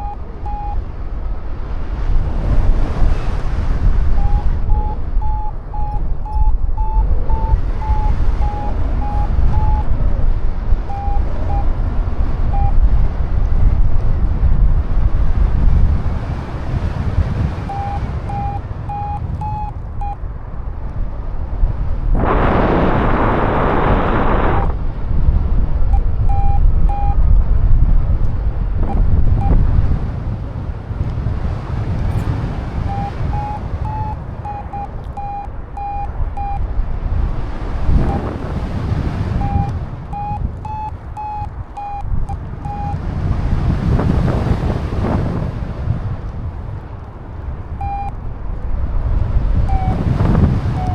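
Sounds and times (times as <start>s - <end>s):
variometer short beeps: 0.0s - 0.9s, 4.0s - 10.2s, 10.8s - 11.8s, 12.4s - 12.9s, 17.4s - 20.2s, 24.5s - 24.8s, 25.9s - 27.4s, 28.8s - 29.6s, 32.1s - 36.8s, 37.9s - 38.4s, 39.2s - 43.1s, 47.8s - 48.2s, 49.6s - 50.9s
wind buffeting microphone: 0.0s - 50.9s.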